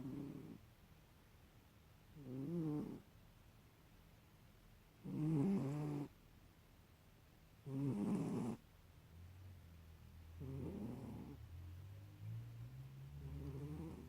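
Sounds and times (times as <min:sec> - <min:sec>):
cat snoring: 0:00.0 - 0:00.6, 0:02.2 - 0:03.0, 0:05.0 - 0:06.1, 0:07.6 - 0:08.6, 0:10.3 - 0:11.6, 0:12.2 - 0:14.0.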